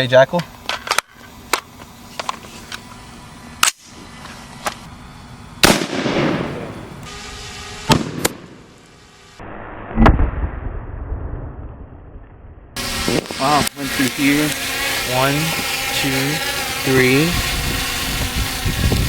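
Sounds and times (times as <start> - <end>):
rifle shots with echo: 5.6 - 6.9.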